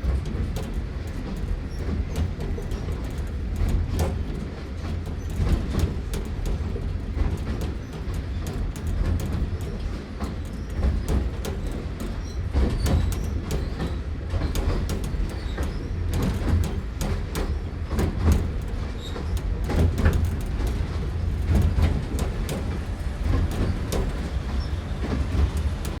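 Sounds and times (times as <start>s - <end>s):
train rumbling: 0.0s - 26.0s
wheels and carriage rattling: 0.0s - 26.0s.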